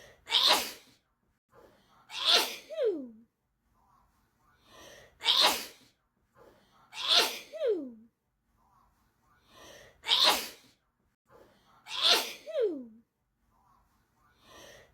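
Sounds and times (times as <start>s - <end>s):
person sneezing: 0.3s - 0.9s, 2.1s - 3.1s, 5.2s - 5.9s, 7.0s - 7.8s, 10.1s - 10.7s, 11.9s - 12.9s.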